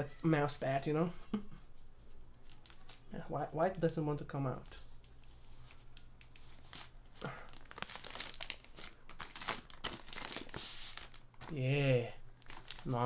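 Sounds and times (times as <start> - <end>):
packaging crinkling and rustling: 2.4 - 3.2, 4.6 - 13.0.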